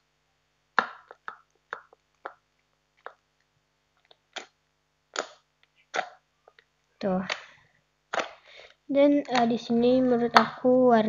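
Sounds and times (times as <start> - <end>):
slime wet pops and clicks: 5.1 - 5.4, 7.2 - 7.5, 8.1 - 8.4.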